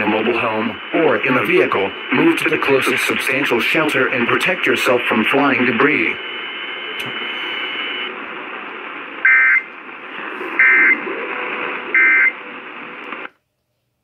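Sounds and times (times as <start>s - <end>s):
radio hiss: 0.0s - 13.3s
two-tone data bursts: 10.6s - 11.1s, 11.9s - 12.4s.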